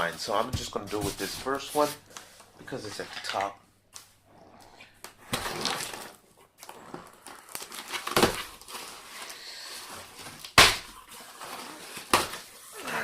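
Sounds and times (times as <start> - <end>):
packaging rustling and crinkling: 5.3 - 13.0.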